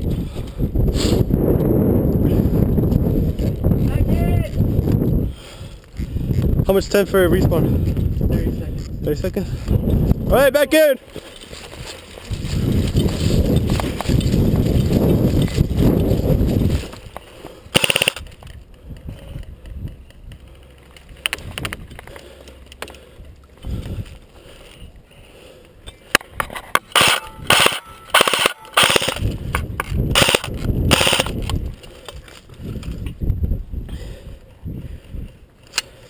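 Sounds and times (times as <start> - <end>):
airsoft guns firing in bursts: 17.7 - 18.3, 26.9 - 29.3, 30.1 - 31.4.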